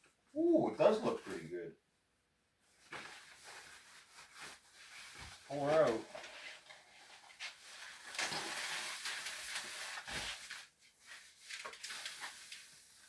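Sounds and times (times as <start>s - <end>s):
packaging rustling and scraping: 2.8s - 13.0s.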